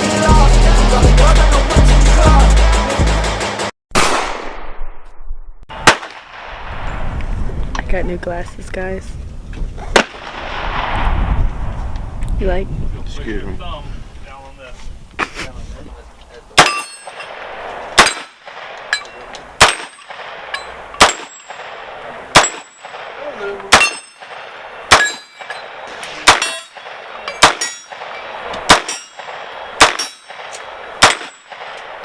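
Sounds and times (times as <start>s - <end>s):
gunshots with metallic ring: 16.6s - 18.6s, 19.6s - 31.9s.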